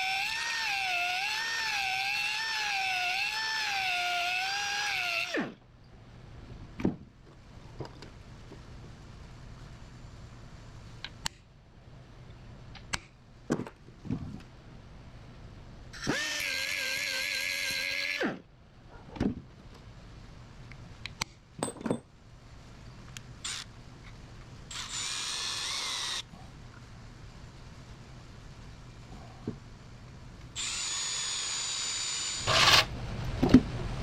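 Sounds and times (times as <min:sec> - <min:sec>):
power drill whining: 0:00.0 - 0:05.6, 0:16.0 - 0:18.4, 0:24.7 - 0:26.2, 0:30.6 - 0:32.9
tools clicking and knocking: 0:21.1 - 0:22.1.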